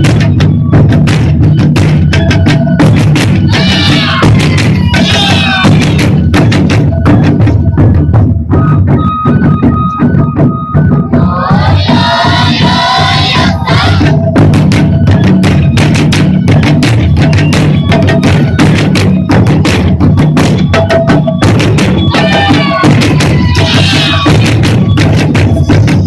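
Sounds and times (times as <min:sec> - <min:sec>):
taiko drums playing: 0:00.0 - 0:26.0
voices calling out: 0:03.5 - 0:06.1, 0:11.1 - 0:14.1, 0:22.1 - 0:24.6.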